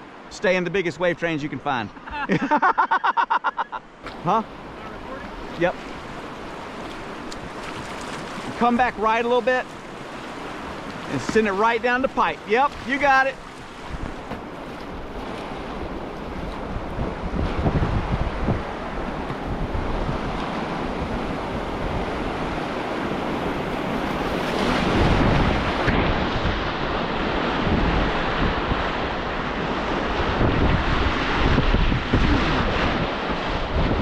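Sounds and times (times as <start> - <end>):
whitewater rapid rushing: 4.0 - 17.1
wind buffeting microphone: 12.1 - 34.0.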